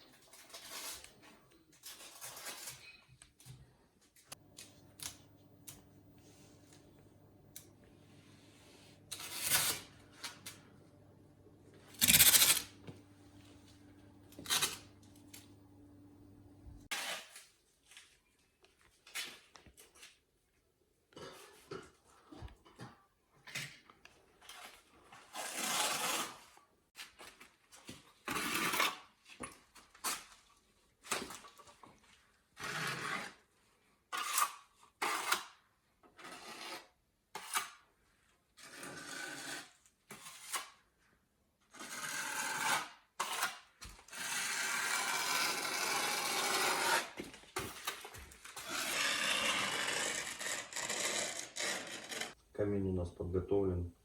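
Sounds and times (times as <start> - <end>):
masking tape ripping off roll: 9.1 - 10.5, 12.0 - 12.7.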